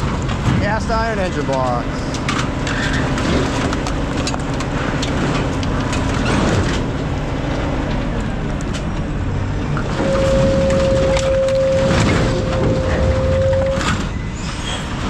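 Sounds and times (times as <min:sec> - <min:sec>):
heavy machinery engine running: 0:00.0 - 0:15.0.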